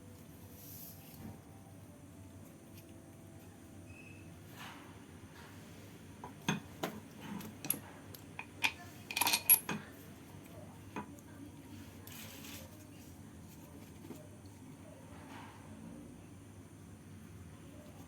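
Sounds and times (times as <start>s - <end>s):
metal tools clinking and clanking: 8.4s - 9.8s.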